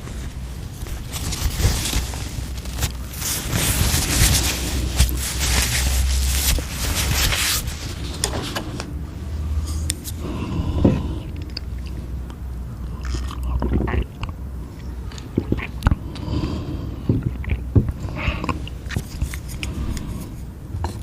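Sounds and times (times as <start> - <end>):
wet mouth sounds: 9.9 - 21.0
chewing and biting food: 11.3 - 16.4, 17.1 - 20.2.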